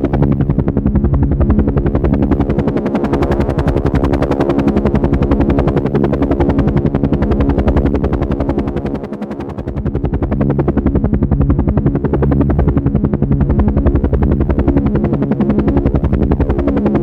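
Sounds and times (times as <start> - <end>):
helicopter rotor chopping: 0.0 - 17.0.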